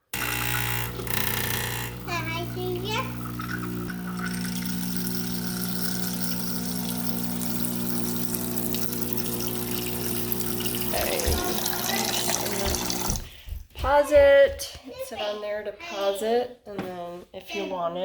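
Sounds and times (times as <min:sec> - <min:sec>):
espresso machine pump humming: 0:00.0 - 0:13.3
water running into a bowl: 0:00.1 - 0:13.5.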